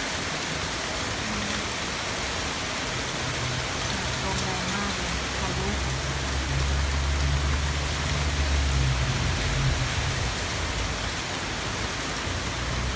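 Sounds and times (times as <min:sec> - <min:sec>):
heavy rain pouring: 0:00.0 - 0:12.9
strong wind rumble: 0:05.0 - 0:11.8.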